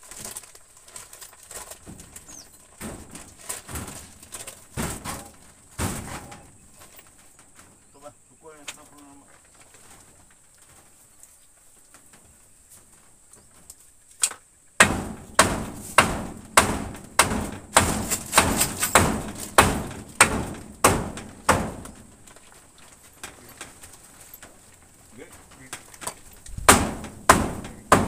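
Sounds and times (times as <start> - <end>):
heavy knocks on wood: 14.8 - 22.3, 26.0 - 28.0.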